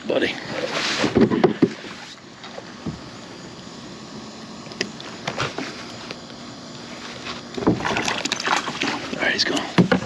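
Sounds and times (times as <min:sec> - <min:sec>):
faint outdoor background hiss: 0:00.0 - 0:10.0
knocks and clicks in a kayak: 0:01.0 - 0:03.0, 0:07.6 - 0:10.0.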